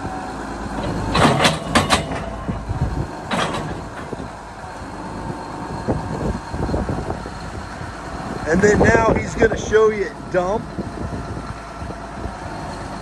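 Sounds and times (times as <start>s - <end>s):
tractor engine running: 0.0s - 13.0s
rocks clattering against metal: 0.8s - 2.6s, 3.2s - 4.3s.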